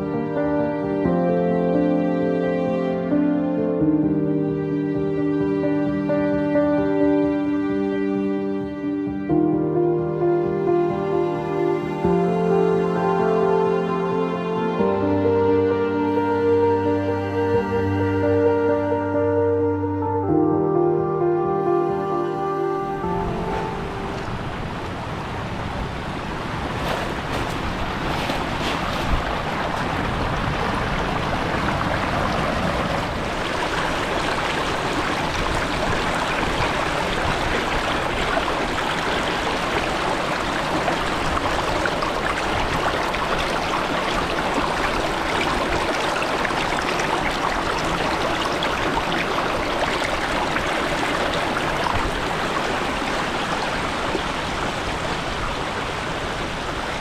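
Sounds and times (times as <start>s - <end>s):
sea waves washing onto beach: 23.0s - 57.0s.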